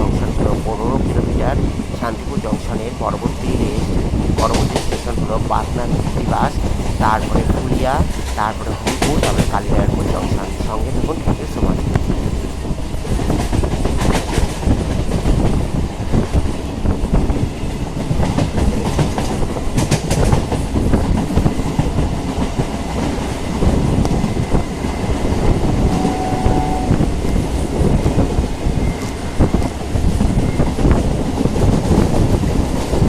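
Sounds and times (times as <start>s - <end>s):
train wheels rumbling on rails: 0.0s - 33.0s
clickety-clack of rail joints: 8.0s - 33.0s.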